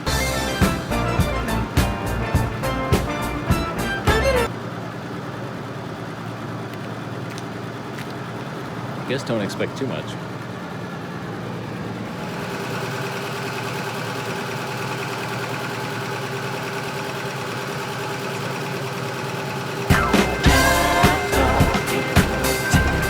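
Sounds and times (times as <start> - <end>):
car engine idling: 0.0 - 23.0
music with sharp beats: 0.1 - 4.5, 19.9 - 23.0.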